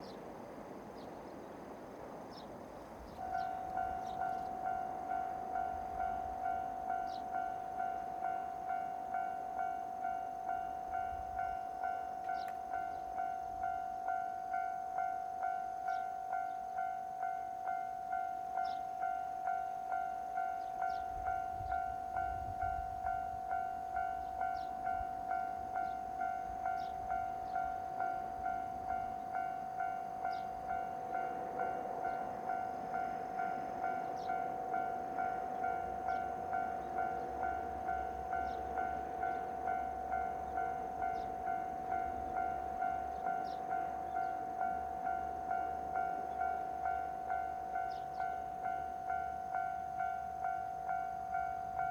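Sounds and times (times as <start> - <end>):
diesel railcar engine and wheels: 0.0 - 51.9.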